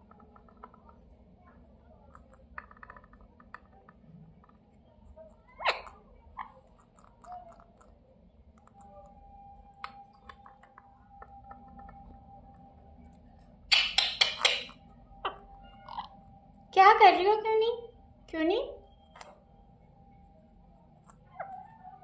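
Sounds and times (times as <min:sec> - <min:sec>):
parrot chirping: 0:05.4 - 0:07.8, 0:13.7 - 0:16.2, 0:21.0 - 0:22.0
soft clicks: 0:06.8 - 0:15.0.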